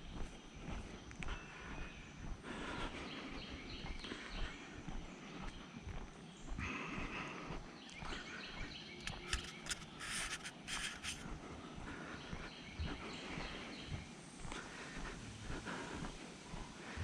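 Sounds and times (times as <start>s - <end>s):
small birds chirping: 0.0s - 17.0s
high rasping bird calls: 8.3s - 14.0s.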